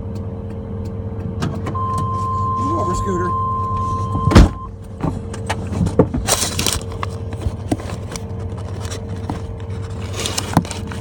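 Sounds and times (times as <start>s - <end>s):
vehicle interior hum: 0.0s - 11.0s
rustling scrape: 5.7s - 11.0s.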